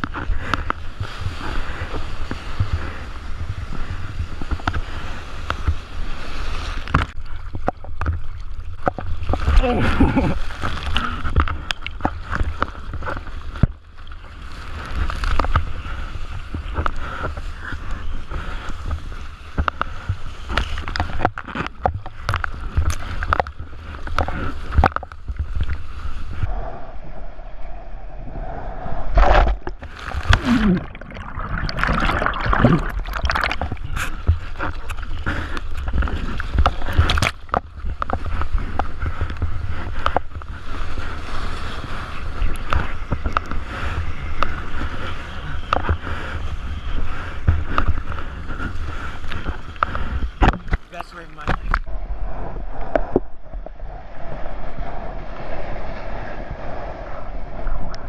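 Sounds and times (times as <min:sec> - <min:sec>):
ocean water splashing: 0:00.0 - 0:58.0
low microphone rumble: 0:24.8 - 0:40.5, 0:50.1 - 0:58.0.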